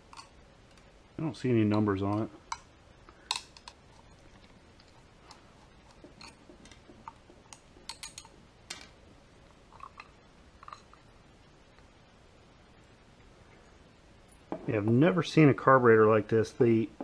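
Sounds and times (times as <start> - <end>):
small metal parts clicking: 2.1 - 5.4, 6.1 - 8.9.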